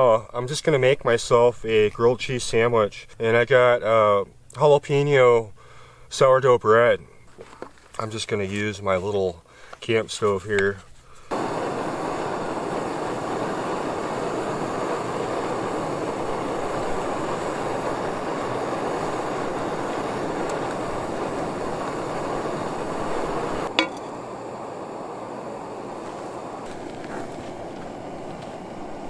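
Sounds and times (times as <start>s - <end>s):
camp stove burner hissing: 9.4s - 29.0s.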